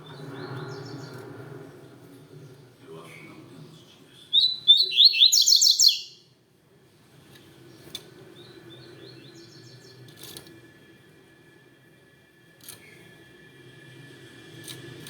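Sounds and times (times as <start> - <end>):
bird singing sliding notes: 4.4 - 6.2.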